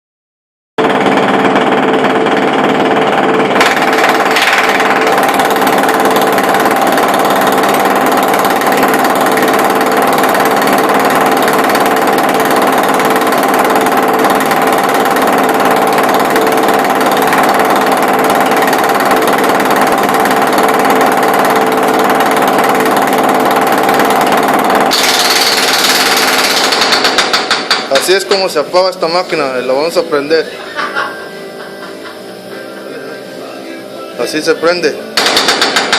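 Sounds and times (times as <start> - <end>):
jackhammer hammering: 0.8 - 29.1, 35.2 - 35.9
steady mechanical hum: 0.8 - 35.9.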